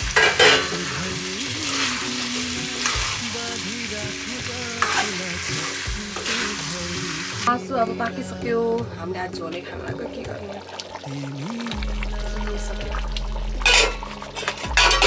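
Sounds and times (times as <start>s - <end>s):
spoon scraping a pan: 0.0s - 3.7s, 4.7s - 7.4s, 13.6s - 15.0s
curry sizzling in a pan: 0.0s - 8.2s, 9.6s - 15.0s.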